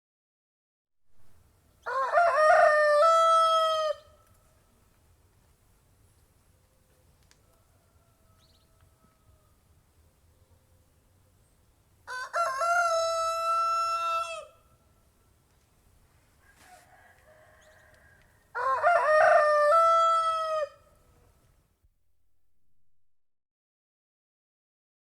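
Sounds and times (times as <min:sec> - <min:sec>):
rooster crowing: 0:01.8 - 0:04.2, 0:07.4 - 0:09.6, 0:12.1 - 0:14.6, 0:16.4 - 0:21.0.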